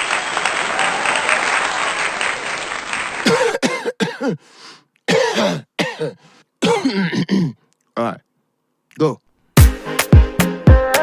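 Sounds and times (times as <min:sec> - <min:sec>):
person coughing: 0:03.2 - 0:04.5, 0:05.1 - 0:07.7
dance music: 0:09.6 - 0:11.0.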